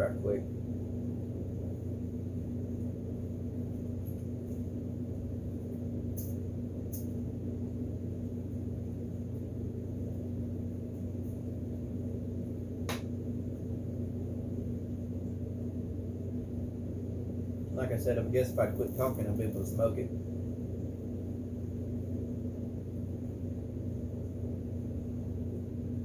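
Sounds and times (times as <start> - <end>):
low hum with held tone: 0.0 - 26.0.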